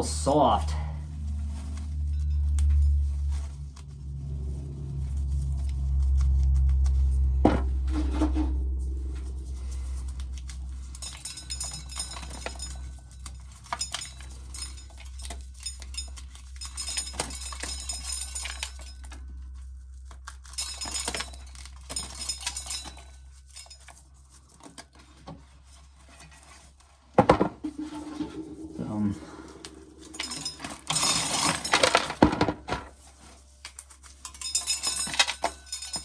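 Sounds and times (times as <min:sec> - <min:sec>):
low rumble: 0:00.6 - 0:11.7, 0:27.6 - 0:32.3.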